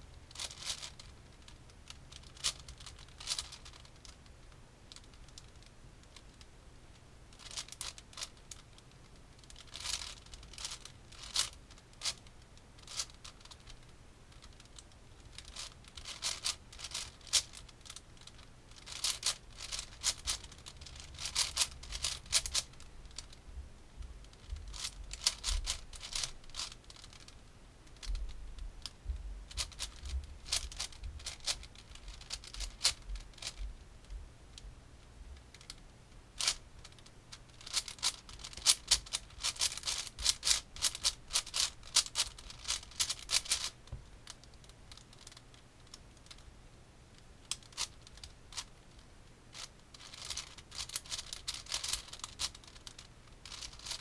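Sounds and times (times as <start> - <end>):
puzzle cube clicking: 0.3 - 4.2, 7.4 - 8.7, 9.4 - 23.4, 24.3 - 28.1, 29.5 - 33.6, 36.4 - 46.4, 47.4 - 54.0.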